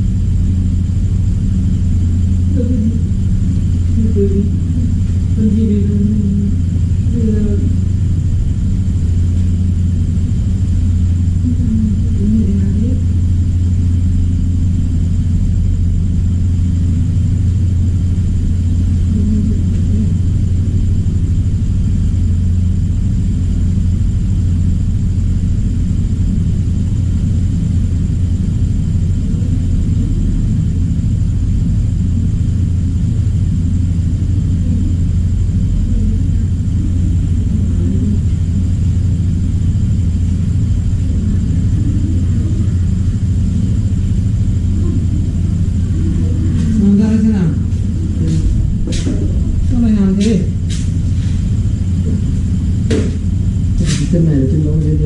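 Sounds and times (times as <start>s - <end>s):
low-pitched hum: 0.0s - 55.0s
faint voices: 34.4s - 38.7s, 40.6s - 50.7s.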